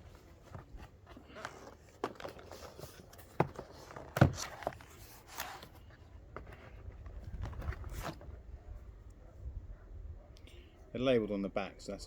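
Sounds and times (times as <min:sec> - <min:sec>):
light packaging rustling: 0:00.0 - 0:08.5.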